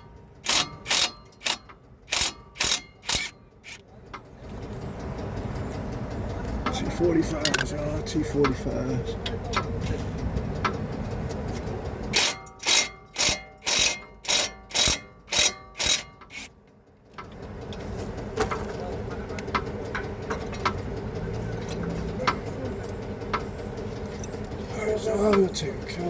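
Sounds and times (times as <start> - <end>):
power tool driving bolts: 0.0 - 3.8, 12.1 - 16.5.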